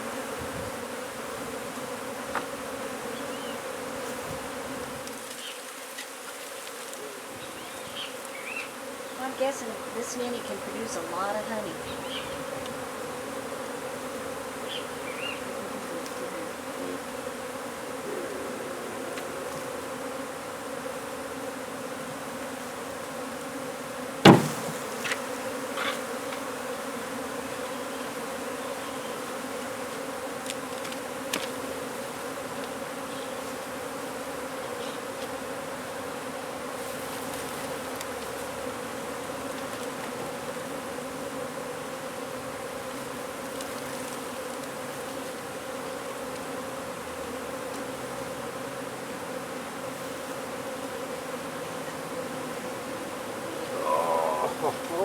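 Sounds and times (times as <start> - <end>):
honey bees buzzing: 0.0 - 55.0
sharp knock: 24.3 - 24.9.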